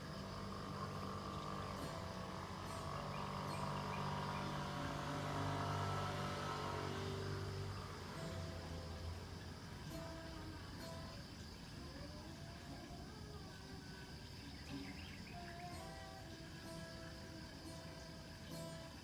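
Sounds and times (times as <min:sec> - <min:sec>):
motor engine passing by: 0:00.0 - 0:11.2.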